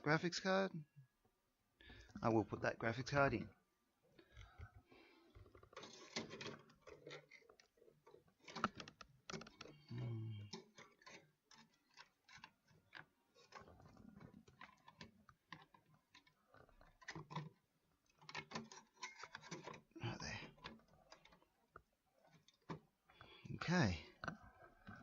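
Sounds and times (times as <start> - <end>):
computer hardware clicks and knocks: 5.5 - 9.9, 10.5 - 21.4
hardware scraping: 5.5 - 9.9.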